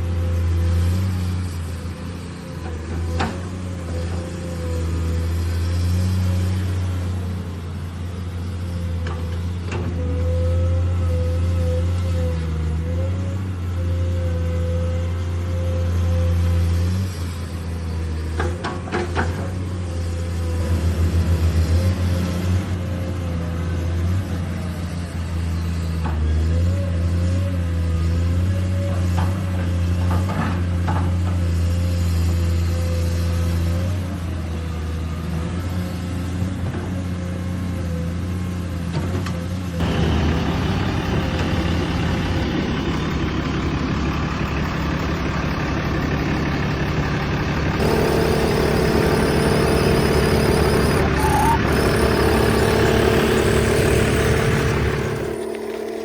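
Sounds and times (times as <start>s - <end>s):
diesel-like engine drone: 39.8s - 56.0s
faint wavering whine: 47.8s - 56.0s
short clicks: 47.8s - 56.0s.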